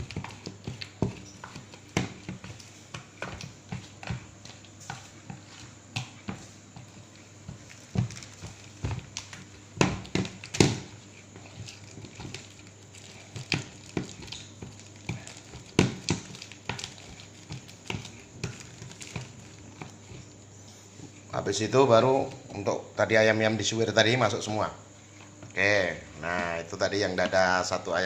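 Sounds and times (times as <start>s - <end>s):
spoon stirring paste in bowl: 0.0s - 20.3s.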